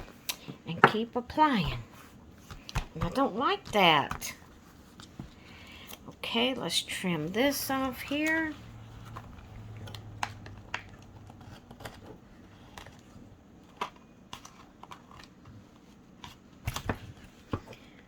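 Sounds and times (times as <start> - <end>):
paper rustling: 7.6 - 18.0.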